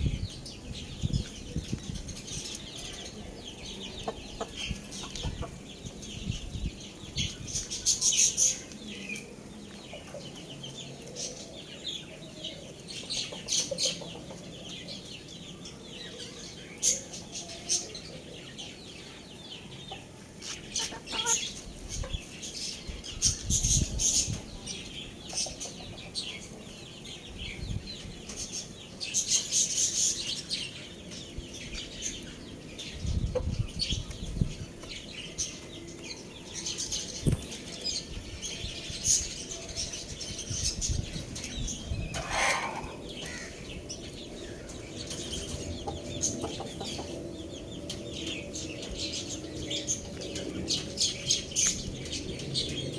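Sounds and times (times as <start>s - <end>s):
roosters clucking: 1.6s - 15.1s, 16.8s - 27.5s, 32.0s - 52.9s
rustling and scratching: 42.1s - 43.3s
rooster squawk: 42.2s - 43.0s.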